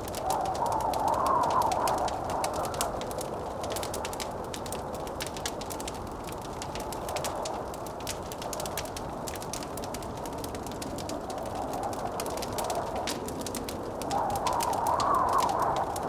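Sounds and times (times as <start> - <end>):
howling blizzard wind: 0.0 - 16.0
wood fire crackling: 0.0 - 16.0.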